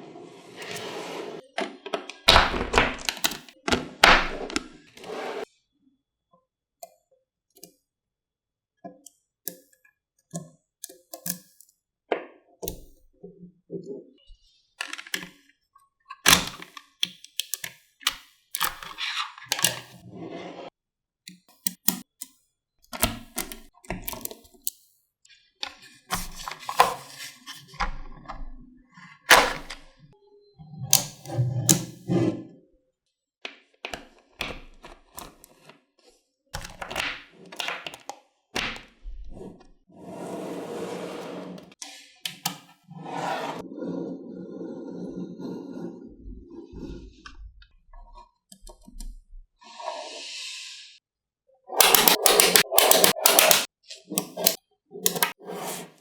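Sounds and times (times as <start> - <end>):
magnetic balls clicking: 51.8 - 55.4.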